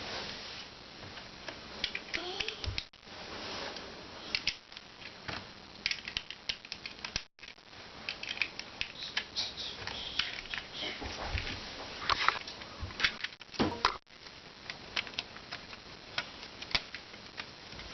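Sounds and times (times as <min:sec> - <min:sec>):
plastic toy bricks clicking: 0:01.8 - 0:02.8, 0:04.3 - 0:05.1, 0:05.8 - 0:07.2, 0:08.1 - 0:09.3, 0:09.9 - 0:10.7, 0:14.6 - 0:17.9.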